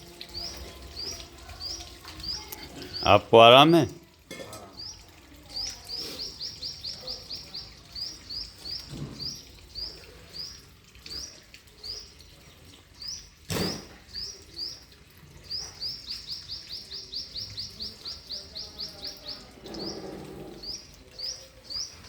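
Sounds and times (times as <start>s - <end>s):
sharp knock: 13.5s - 13.9s
small bird chirping: 14.1s - 22.0s.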